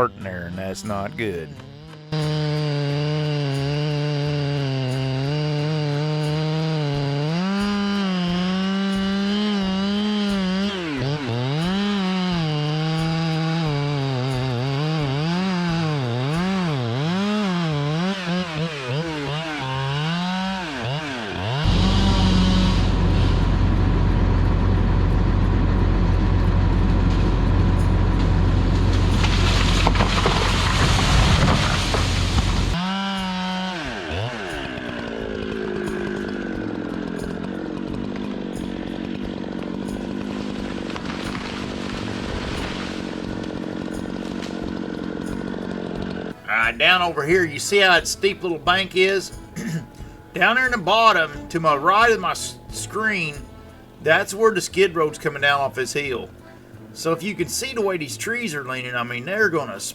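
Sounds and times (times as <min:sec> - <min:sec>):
chainsaw cutting wood: 0:00.0 - 0:59.8
loud rough noise: 0:01.5 - 0:48.6.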